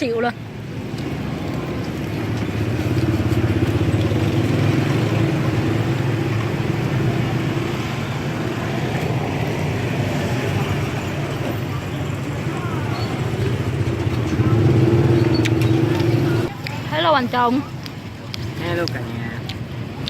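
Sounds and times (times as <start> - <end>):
motorcycle engine running: 1.0 - 17.0.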